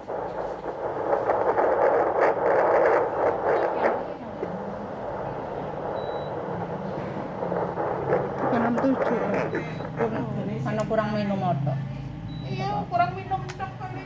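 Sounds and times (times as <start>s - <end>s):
doppler fetal heartbeat whooshing: 0.0s - 10.4s.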